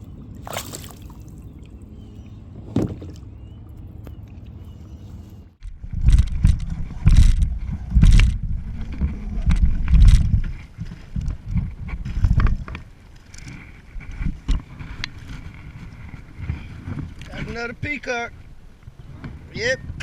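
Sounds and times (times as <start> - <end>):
knocks and thumps on a kayak: 2.5 - 3.4.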